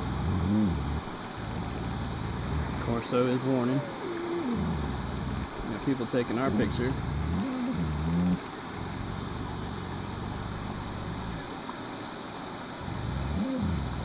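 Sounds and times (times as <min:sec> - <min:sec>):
waterfall rushing: 0:00.0 - 0:14.0
person's voice: 0:05.7 - 0:07.0.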